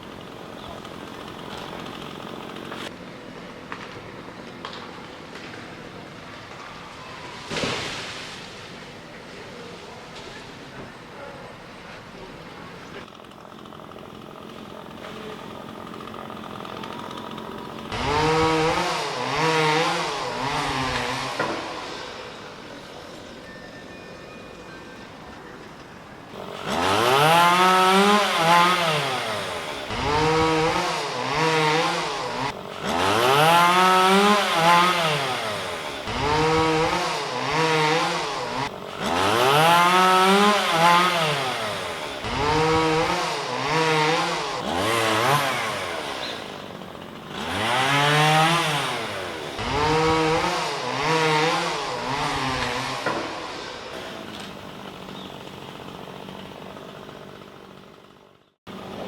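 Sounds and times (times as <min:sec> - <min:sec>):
chainsaw revving: 0:00.0 - 0:03.0, 0:12.7 - 0:23.4, 0:26.2 - 0:59.0.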